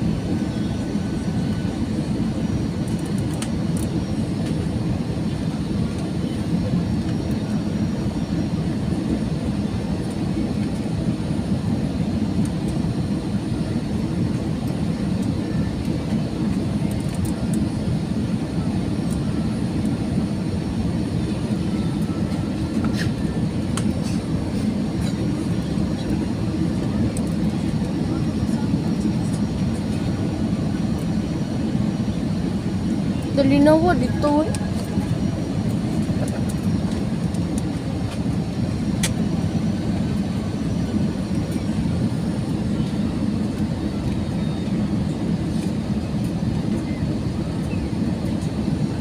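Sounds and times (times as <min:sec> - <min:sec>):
airplane cabin engine drone: 0:00.0 - 0:49.0.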